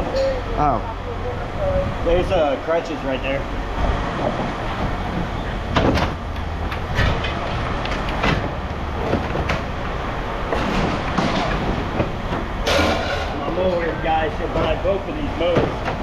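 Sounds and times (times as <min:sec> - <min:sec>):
scrap metal clanking: 0:10.5 - 0:14.9.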